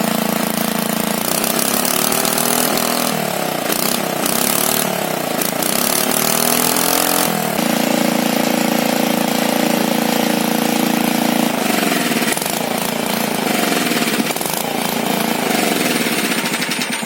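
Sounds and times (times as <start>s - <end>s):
engine running: 0.0s - 17.0s.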